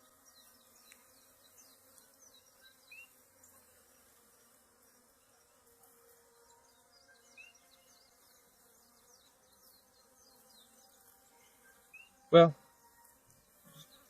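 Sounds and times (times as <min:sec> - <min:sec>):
honeybees buzzing: 0:00.0 - 0:14.0.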